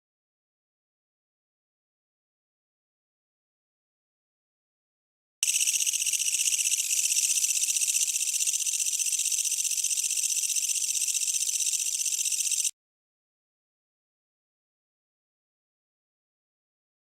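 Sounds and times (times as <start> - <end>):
katydid buzzing: 5.4 - 12.7.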